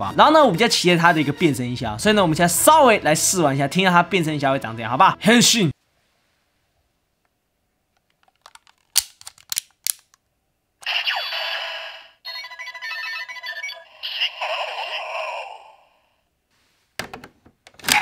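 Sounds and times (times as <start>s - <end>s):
plastic toy clicks: 8.0s - 10.2s
electronic toy sound effects: 10.8s - 15.8s.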